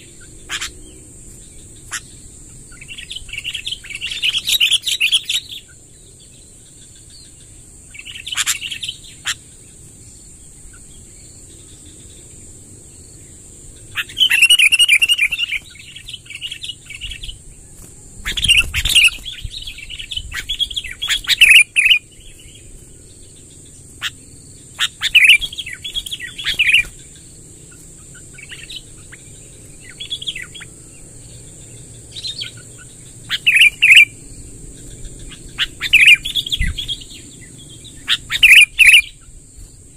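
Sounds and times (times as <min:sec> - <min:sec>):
bulbul warbling song: 0:13.9 - 0:17.3, 0:18.2 - 0:22.3, 0:24.8 - 0:27.0.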